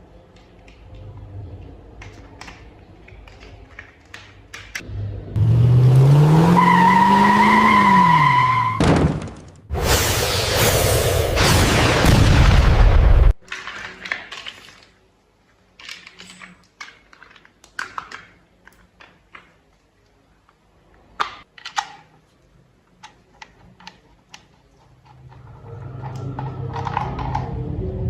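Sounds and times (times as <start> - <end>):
plastic toy parts clicking: 2.0 - 4.8, 13.4 - 15.0, 15.7 - 20.6, 21.2 - 25.4.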